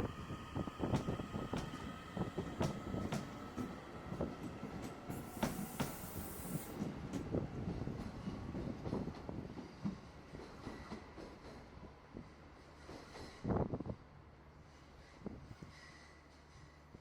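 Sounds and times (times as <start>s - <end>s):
train wheels knocking on rails: 0.8s - 7.3s.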